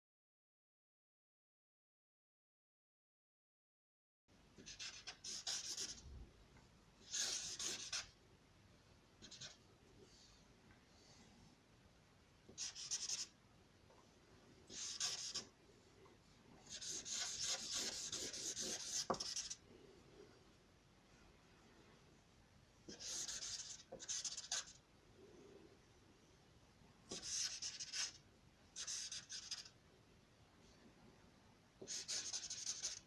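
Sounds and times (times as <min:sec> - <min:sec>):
drawing tool scratching paper: 0:04.6 - 0:06.0, 0:07.1 - 0:08.1, 0:12.6 - 0:13.3, 0:14.7 - 0:15.5, 0:16.7 - 0:19.6, 0:22.9 - 0:24.8, 0:27.1 - 0:28.2, 0:28.8 - 0:29.8, 0:31.8 - 0:33.0.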